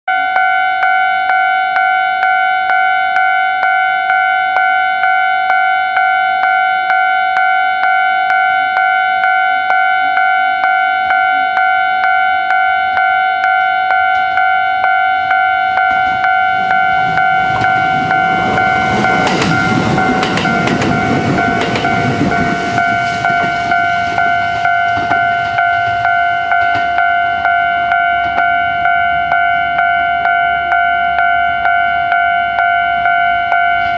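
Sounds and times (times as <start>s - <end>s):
level crossing bell ringing: 0.1s - 33.9s
train rumbling over crossing: 7.8s - 33.9s.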